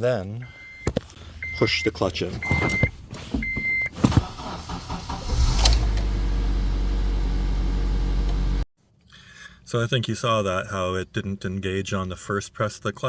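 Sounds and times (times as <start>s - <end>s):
car engine cranking and idling: 0.7s - 8.7s.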